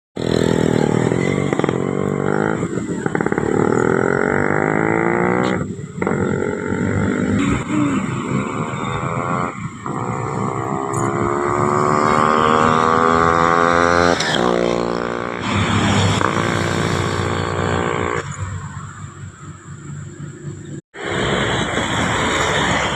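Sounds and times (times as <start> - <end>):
two-stroke motorcycle engine revving: 0.2 - 18.5.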